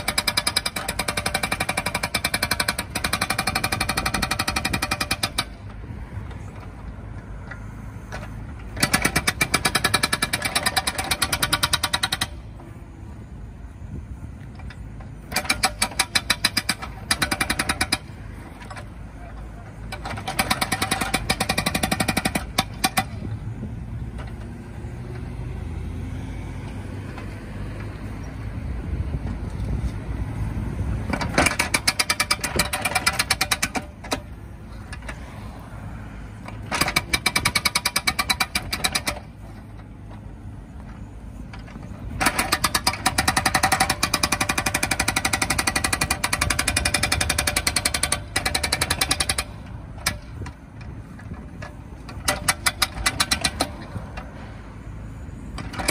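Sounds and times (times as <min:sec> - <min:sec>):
excavator engine running: 0:00.0 - 0:55.9
hydraulic breaker hammering: 0:08.7 - 0:12.4, 0:15.3 - 0:18.9, 0:19.9 - 0:23.3, 0:31.1 - 0:34.4, 0:36.5 - 0:39.3, 0:42.1 - 0:50.5, 0:51.6 - 0:54.4.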